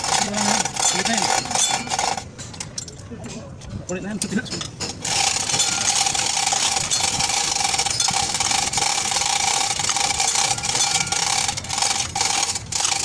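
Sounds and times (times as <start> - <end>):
workshop tool whining: 4.2 - 13.0.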